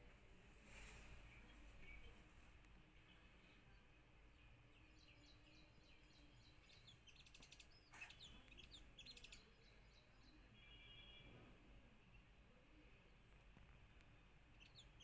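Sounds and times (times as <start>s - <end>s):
bird chirping: 3.0s - 12.4s, 13.8s - 15.0s.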